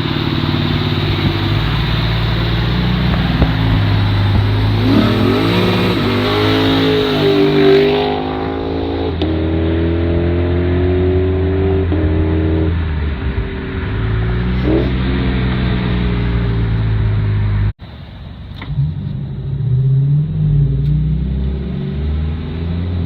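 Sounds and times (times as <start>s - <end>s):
car engine running and revving: 0.0s - 17.8s, 18.4s - 23.0s.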